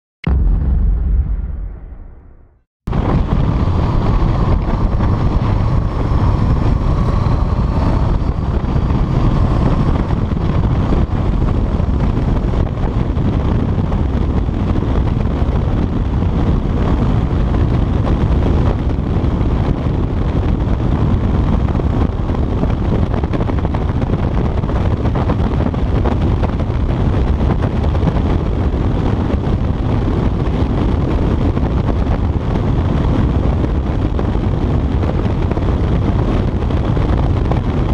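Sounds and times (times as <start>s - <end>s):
wind rush on microphone: 0.2s - 37.9s
motorcycle engine: 2.9s - 29.0s.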